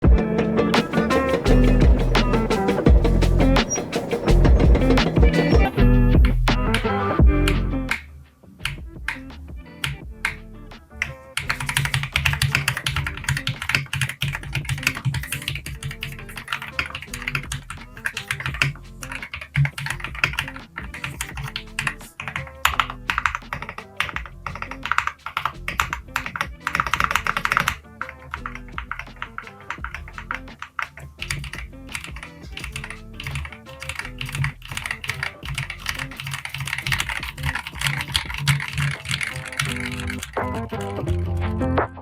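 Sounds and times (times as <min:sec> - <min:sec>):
background music: 0:00.0 - 0:42.0
mechanical keyboard typing: 0:11.4 - 0:41.1.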